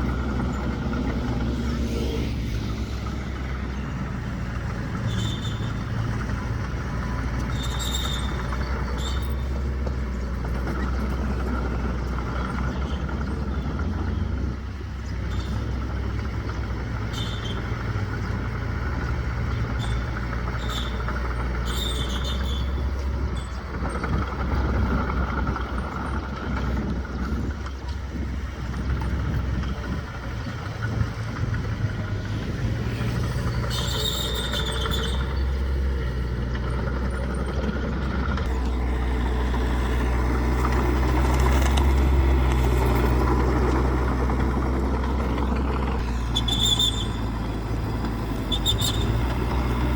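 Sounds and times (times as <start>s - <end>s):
bulldozer diesel engine running: 0.0s - 49.9s
high squeals: 3.3s - 6.4s, 7.2s - 9.7s, 19.6s - 23.6s, 33.1s - 36.0s, 46.0s - 49.9s.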